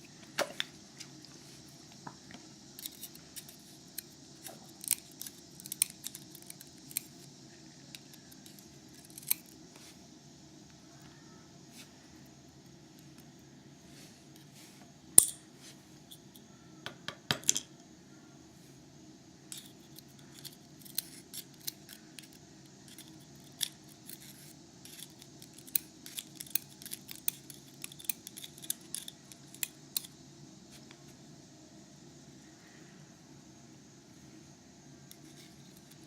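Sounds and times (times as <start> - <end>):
tweezers clicking on lock pins: 4.8 - 7.1, 19.6 - 30.1.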